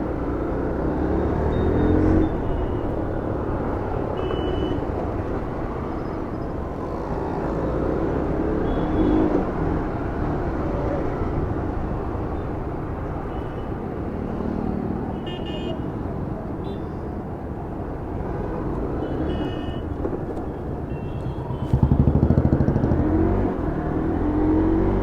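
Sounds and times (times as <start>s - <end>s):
motorcycle engine: 21.3s - 24.7s.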